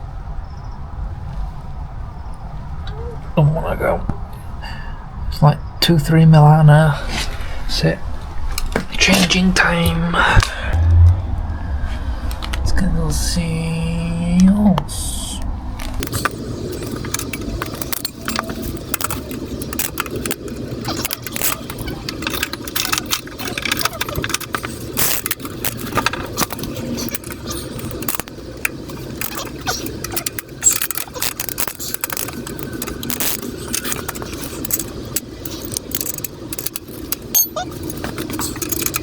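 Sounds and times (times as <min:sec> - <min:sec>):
metallic clinking of tools: 0:16.0 - 0:39.0.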